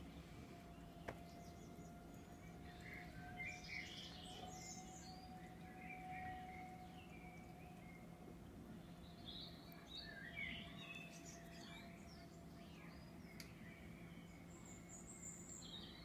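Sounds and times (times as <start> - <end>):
birds chirping faintly: 0.0 - 16.0
steady background hum: 0.0 - 16.0.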